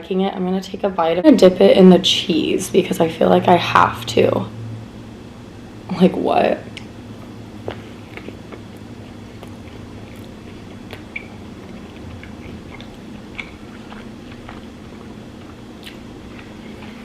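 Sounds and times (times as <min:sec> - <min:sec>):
faint low hum: 0:00.0 - 0:17.0
close chewing: 0:07.7 - 0:17.0
wet mouth clicks: 0:09.4 - 0:14.7.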